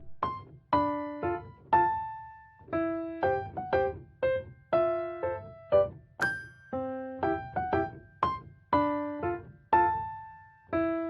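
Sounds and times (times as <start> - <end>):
gentle piano melody: 0.0 - 11.0.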